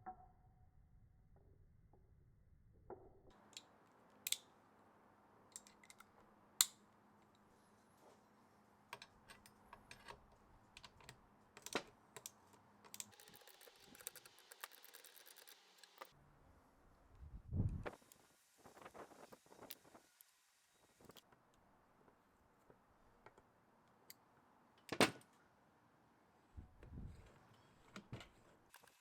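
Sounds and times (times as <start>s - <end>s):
metal parts and tools clicking: 9.0s - 16.1s
rapid ticks: 13.0s - 16.1s.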